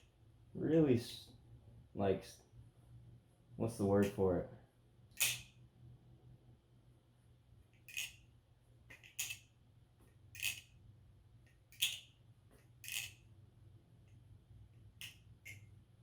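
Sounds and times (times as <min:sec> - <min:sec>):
butterfly knife handles clacking: 0:05.2 - 0:05.5, 0:07.9 - 0:08.2, 0:08.9 - 0:09.4, 0:10.4 - 0:10.7, 0:11.7 - 0:12.1, 0:12.8 - 0:13.2.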